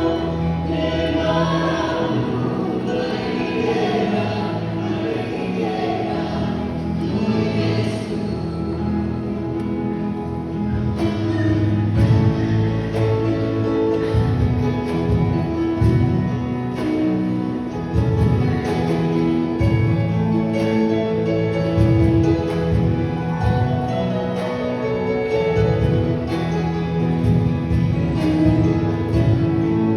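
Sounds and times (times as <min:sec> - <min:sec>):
instrumental music with bass pulse: 0:00.0 - 0:29.9.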